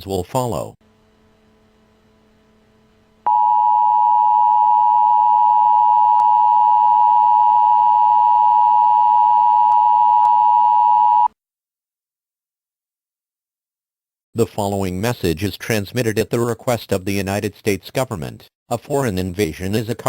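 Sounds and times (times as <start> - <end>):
steady two-tone beep: 3.3 - 11.3.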